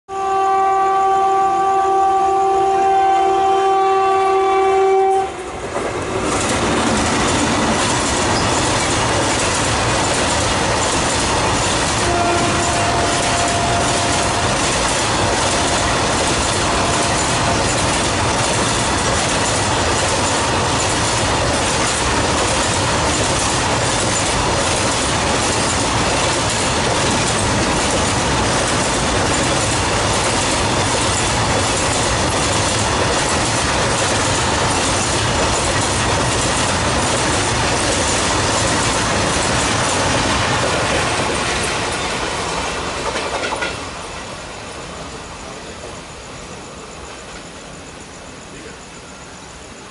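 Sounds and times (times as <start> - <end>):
steel wheels rushing on rail: 0.1 - 49.9
wheels clacking over rail joints: 5.6 - 44.3.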